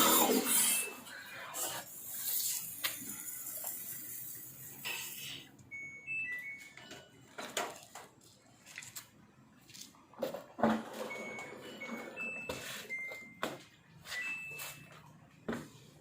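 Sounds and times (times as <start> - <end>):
short electronic beeps: 0.0 - 1.1.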